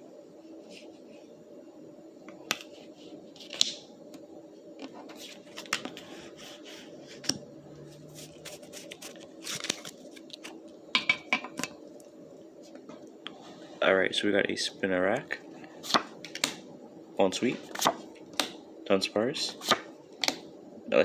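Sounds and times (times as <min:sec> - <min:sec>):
foil wrapper crinkling: 0:08.2 - 0:10.6.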